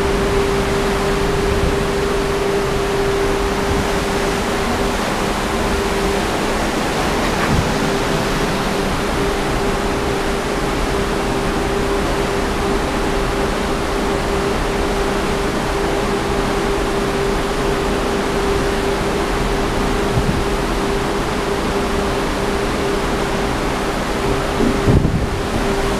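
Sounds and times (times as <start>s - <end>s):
steady tone: 0.0s - 17.5s
sea wash: 0.0s - 25.9s
strong wind rushing: 3.0s - 10.6s, 24.6s - 25.8s.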